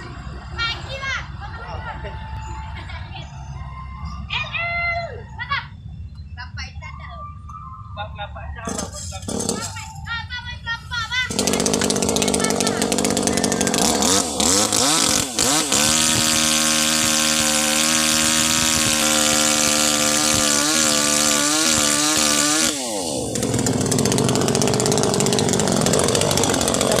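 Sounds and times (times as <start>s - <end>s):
chainsaw engine revving: 8.7s - 9.8s, 11.3s - 27.0s.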